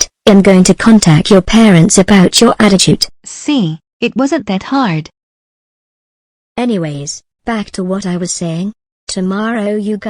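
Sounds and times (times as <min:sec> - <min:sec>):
text-to-speech voice: 0:00.0 - 0:05.1, 0:06.6 - 0:10.0.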